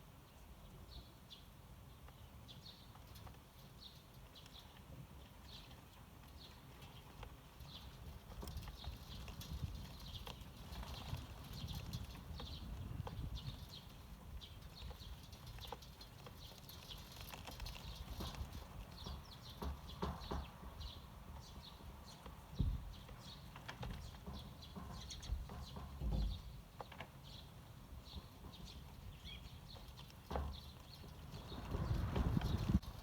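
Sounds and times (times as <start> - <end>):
sparrows chirping: 0.3 - 33.0.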